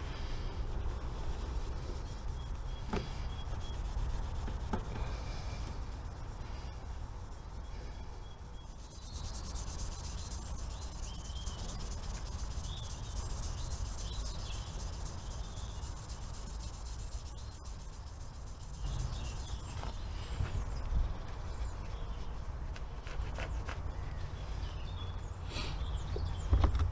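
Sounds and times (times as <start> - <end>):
wire wool rubbing on metal: 0.0 - 19.8.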